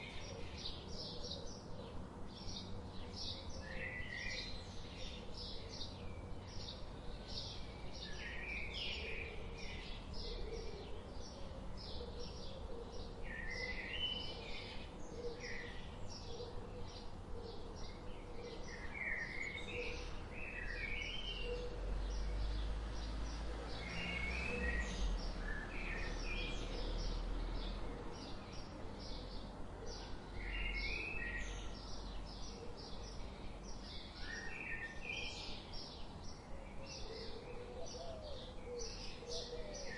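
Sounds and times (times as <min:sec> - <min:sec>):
birds chirping and singing: 0:00.0 - 0:39.9
outdoor background hiss: 0:00.0 - 0:39.9.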